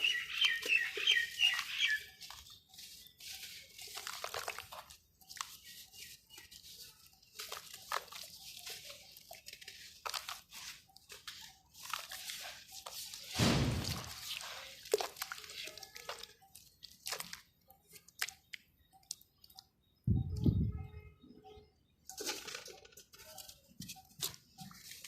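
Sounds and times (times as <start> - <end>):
dirt crumbling into water: 13.2 - 17.5
loud thump: 13.4 - 14.2.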